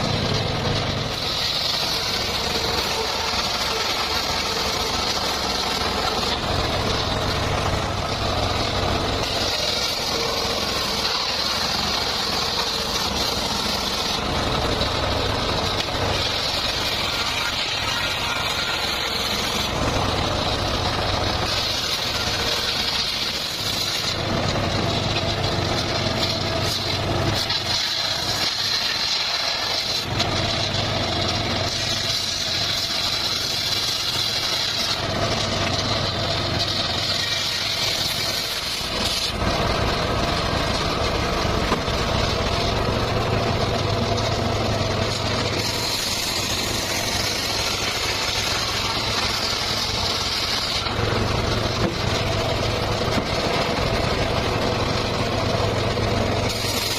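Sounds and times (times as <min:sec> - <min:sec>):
circular saw cutting wood: 0:00.0 - 0:56.9.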